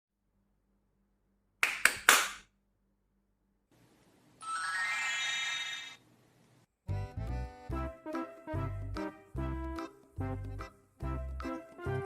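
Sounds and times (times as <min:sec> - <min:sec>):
bright upward sweeping tone: 0:04.4 - 0:06.0.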